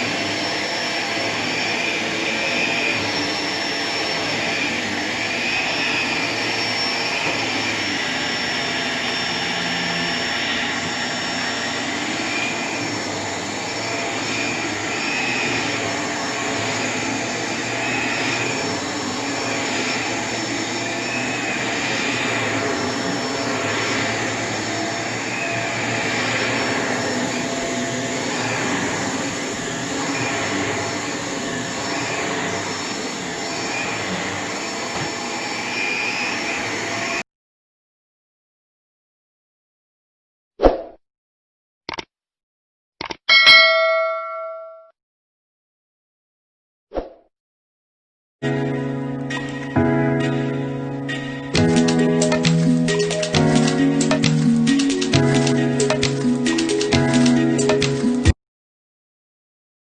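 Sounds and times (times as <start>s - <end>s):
vacuum cleaner running: 0.0s - 37.2s, 48.4s - 58.4s.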